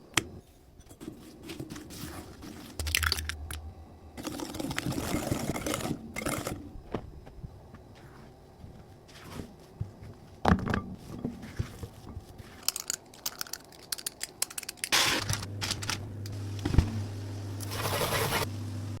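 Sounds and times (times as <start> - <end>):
steady low hum: 0.0 - 12.6, 14.9 - 19.0
crinkling: 11.0 - 16.0.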